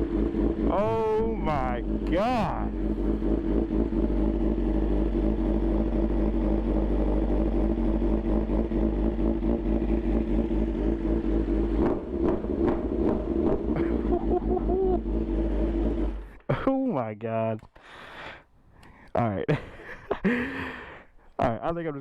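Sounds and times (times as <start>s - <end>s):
motorcycle engine idling loudly: 0.0s - 16.6s.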